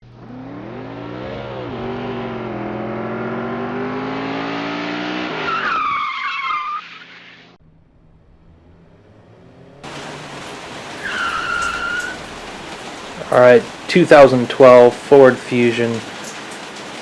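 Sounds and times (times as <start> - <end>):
car engine revving: 0.0 - 14.9
tire squeal: 5.2 - 7.6, 9.9 - 12.7.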